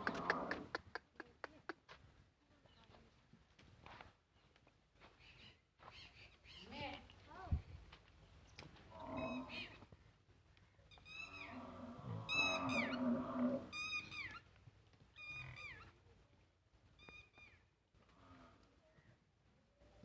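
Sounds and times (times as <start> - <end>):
lower longer animal call: 8.9 - 9.8, 11.1 - 13.9.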